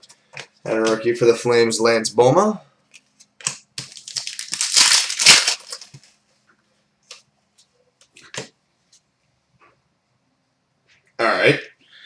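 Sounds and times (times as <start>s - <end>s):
card packaging crinkling: 3.0s - 6.2s.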